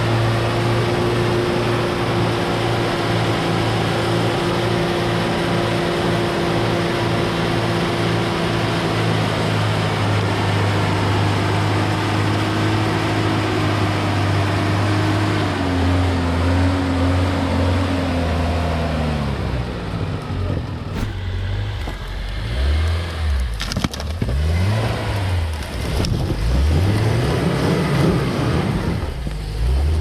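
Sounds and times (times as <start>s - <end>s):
off-road engine revving: 0.0s - 30.0s
sharp cracks and snaps: 23.3s - 24.4s.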